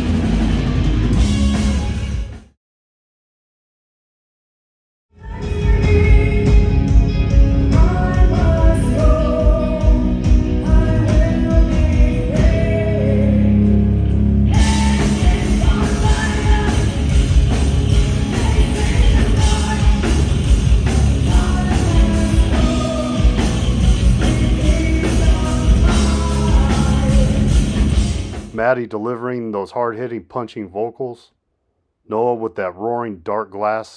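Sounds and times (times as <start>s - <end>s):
heavy metal band playing live: 0.0s - 2.5s, 5.2s - 28.6s
person singing: 5.2s - 13.8s, 14.5s - 27.9s.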